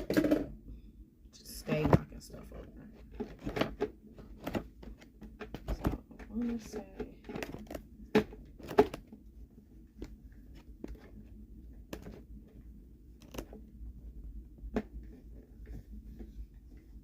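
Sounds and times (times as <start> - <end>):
plastic parts clicking and knocking: 0.0 - 0.6, 3.0 - 9.2, 11.8 - 12.6, 13.2 - 13.6.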